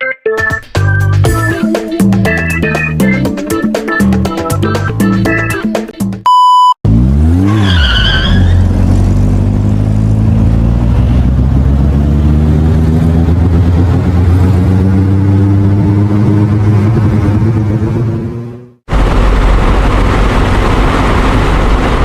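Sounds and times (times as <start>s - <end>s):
car engine revving up: 6.8s - 22.0s.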